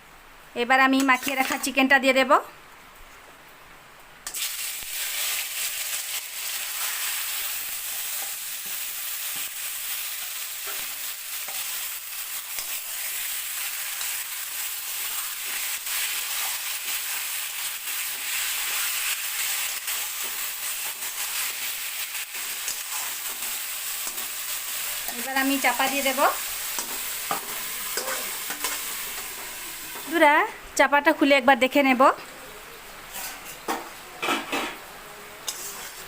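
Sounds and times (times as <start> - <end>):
chicken sizzling in oil: 4.2 - 30.2.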